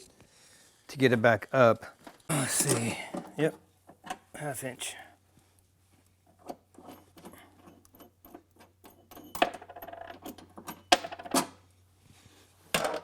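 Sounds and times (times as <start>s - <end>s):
metal tools clinking: 2.4s - 3.0s.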